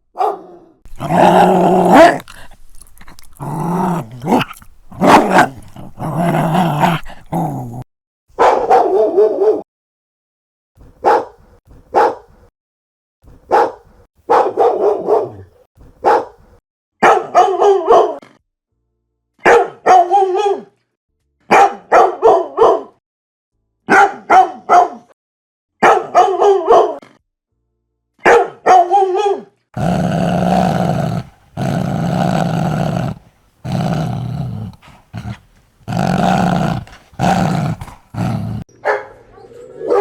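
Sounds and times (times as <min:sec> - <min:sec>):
dog barking: 0:00.1 - 0:07.8, 0:08.4 - 0:09.6, 0:11.0 - 0:12.4, 0:13.5 - 0:16.4, 0:17.0 - 0:18.2, 0:19.4 - 0:20.7, 0:21.5 - 0:23.0, 0:23.9 - 0:25.1, 0:25.8 - 0:27.0, 0:28.2 - 0:39.2.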